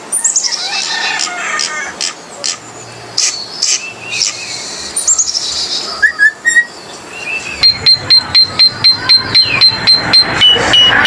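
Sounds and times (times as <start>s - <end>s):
bird calling with clicks and squeaks: 3.2s - 11.0s
bird whistled notes: 3.7s - 11.0s.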